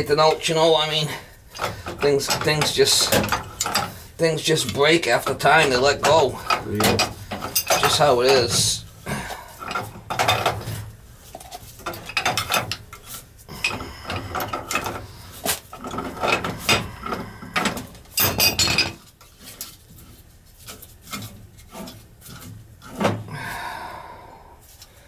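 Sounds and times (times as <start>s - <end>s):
metal tools clinking and clattering: 1.5s - 8.8s, 9.5s - 15.1s, 15.7s - 19.8s.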